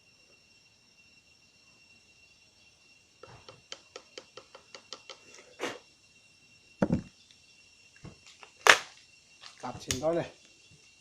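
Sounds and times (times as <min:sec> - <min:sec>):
heavy low thud: 0:06.8 - 0:07.1.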